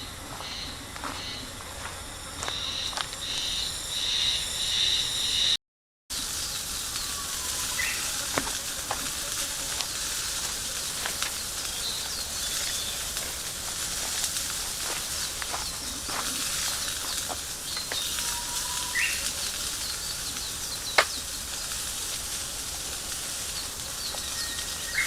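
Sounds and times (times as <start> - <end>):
high steady buzz: 0.0 - 25.0
fire crackling: 6.1 - 25.0
food sizzling in a frying pan: 6.1 - 25.0.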